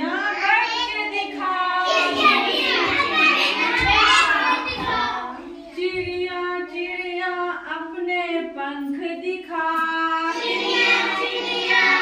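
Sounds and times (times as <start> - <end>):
child singing a rhyme: 0.0 - 6.8, 10.1 - 12.0.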